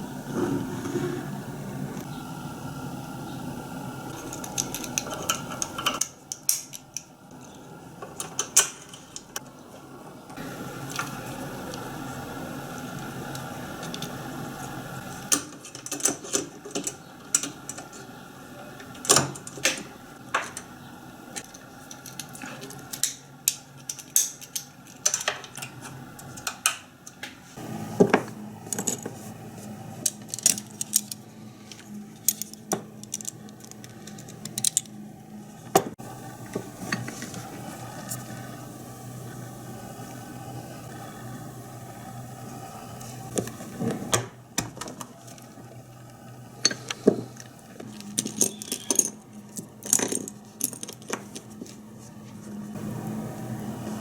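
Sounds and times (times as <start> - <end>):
low machine hum: 0.0 - 54.0
metallic clinks and clatter: 47.9 - 51.4.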